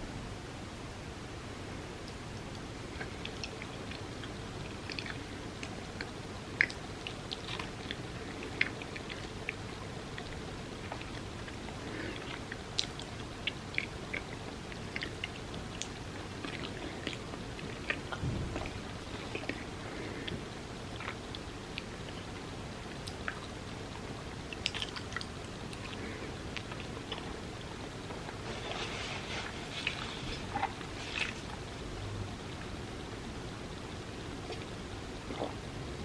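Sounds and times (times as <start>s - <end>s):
steady hiss: 0.0s - 36.0s
person chewing soft food: 2.0s - 31.9s, 34.4s - 36.0s
dull thump: 18.2s - 18.8s.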